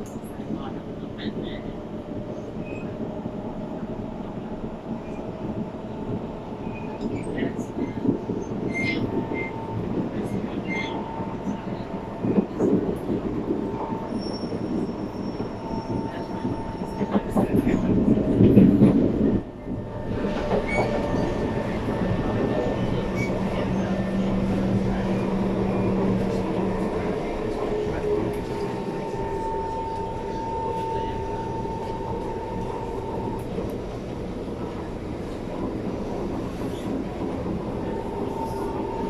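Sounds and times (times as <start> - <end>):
train running rumble: 0.0 - 39.0.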